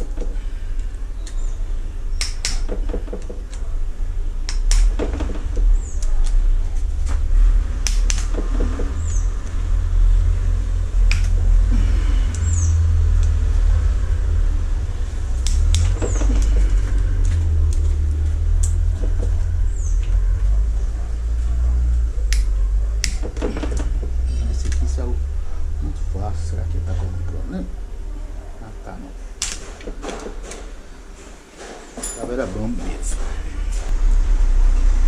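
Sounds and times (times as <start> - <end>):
steady low hum: 0.0 - 35.0
bird chirping: 1.0 - 3.5, 5.6 - 6.1, 8.5 - 9.7, 11.6 - 13.1, 15.6 - 21.6.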